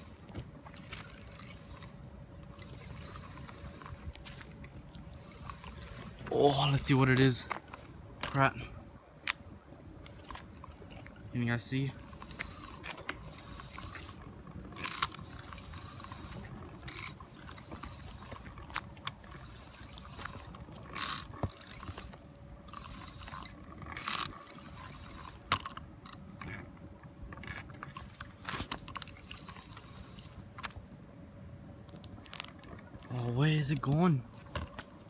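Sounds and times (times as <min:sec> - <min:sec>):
fishing reel clicker ratcheting: 0:00.6 - 0:04.4, 0:05.1 - 0:07.3, 0:12.0 - 0:26.8, 0:27.5 - 0:30.8.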